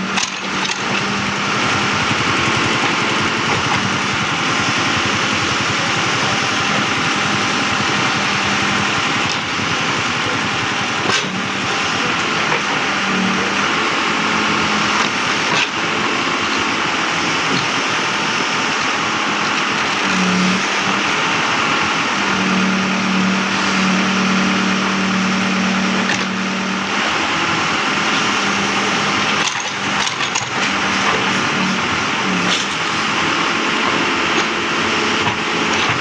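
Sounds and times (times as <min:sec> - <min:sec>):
backhoe engine running: 0:00.0 - 0:18.6, 0:19.6 - 0:36.0.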